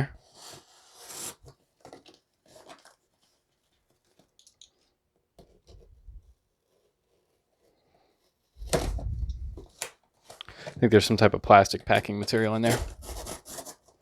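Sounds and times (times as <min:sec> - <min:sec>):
cardboard package rustling: 0:08.6 - 0:10.8, 0:11.9 - 0:14.0.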